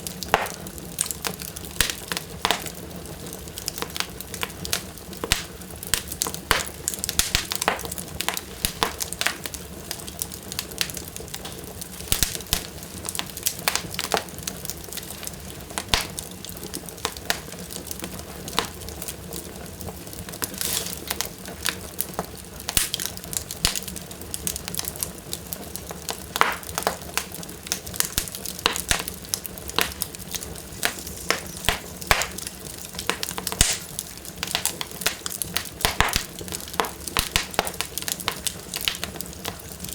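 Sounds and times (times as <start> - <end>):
fire low hiss: 0.0 - 39.9
wood fire crackling and popping: 0.0 - 39.9.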